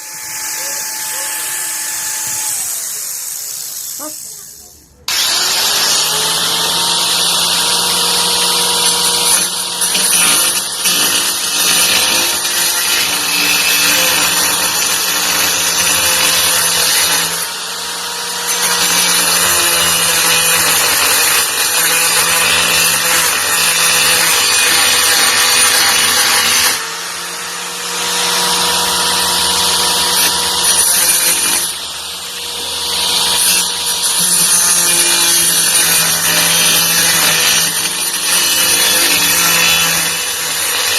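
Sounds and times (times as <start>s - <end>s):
angle grinder grinding: 0.0s - 40.9s.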